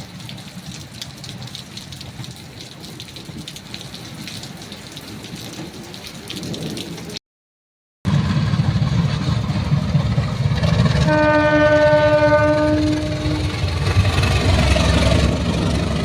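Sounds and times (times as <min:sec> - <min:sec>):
heavy rain: 0:00.0 - 0:07.2, 0:08.1 - 0:16.0
locomotive low rumble: 0:08.1 - 0:16.0
locomotive horn blast: 0:10.9 - 0:15.8.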